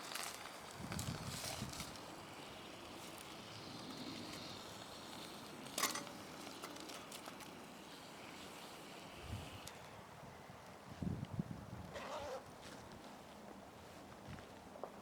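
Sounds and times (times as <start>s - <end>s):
campfire crackling: 0.0s - 10.0s.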